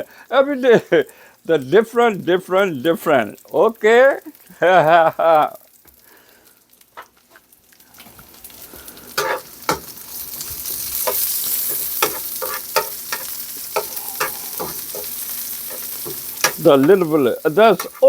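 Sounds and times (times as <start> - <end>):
onion sizzling in oil: 0.0 - 18.0
spatula scraping a pan: 8.8 - 18.0.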